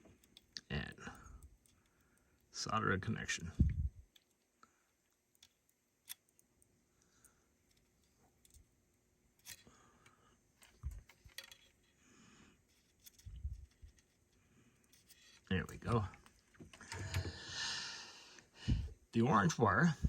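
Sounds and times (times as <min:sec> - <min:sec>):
small metallic clicks and taps: 0:04.0 - 0:08.7, 0:09.4 - 0:11.9.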